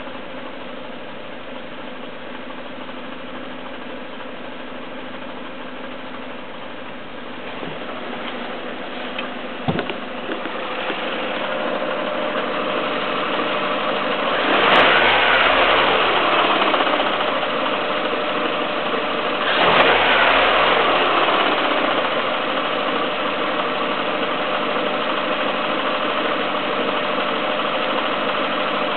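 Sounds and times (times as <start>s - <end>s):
car engine idling: 0.0s - 28.9s
engine revving: 7.4s - 23.4s.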